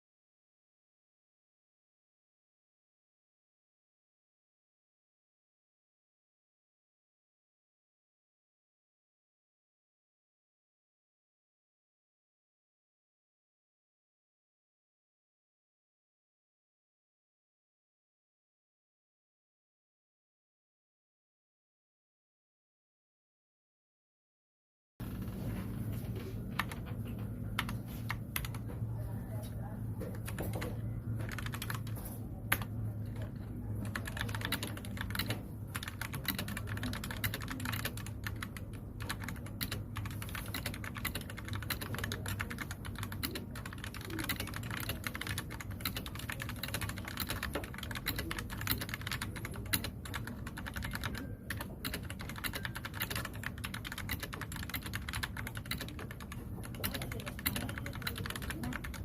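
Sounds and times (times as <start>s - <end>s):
faint low hum: 25.0s - 59.0s
fast mechanical keyboard typing: 26.2s - 28.7s, 30.0s - 59.0s.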